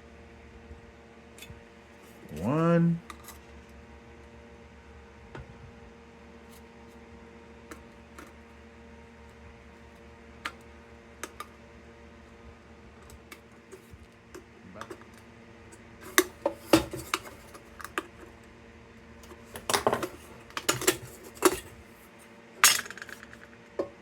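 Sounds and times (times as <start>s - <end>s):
metal parts clattering: 22.6s - 23.5s
small metal parts clinking: 22.6s - 23.6s.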